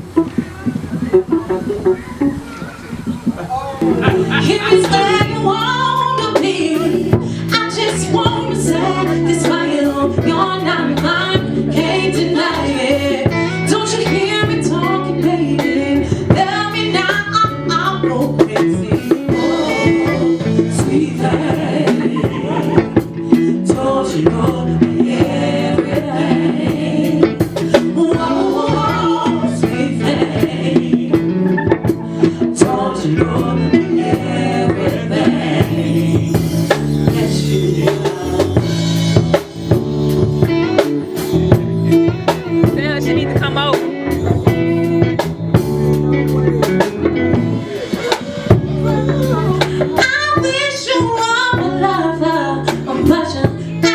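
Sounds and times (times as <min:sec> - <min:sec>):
drum beat: 0:00.0 - 0:07.3, 0:18.4 - 0:51.9
bass line: 0:00.0 - 0:53.9
guitar: 0:00.0 - 0:53.9
keyboard: 0:00.0 - 0:53.9
person singing: 0:03.8 - 0:39.0, 0:47.6 - 0:53.9.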